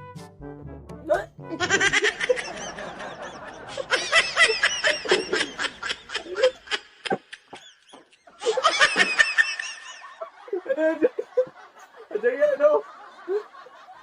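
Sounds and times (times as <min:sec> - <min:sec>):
background music: 0:00.0 - 0:06.6
hearty laughter: 0:01.6 - 0:14.0.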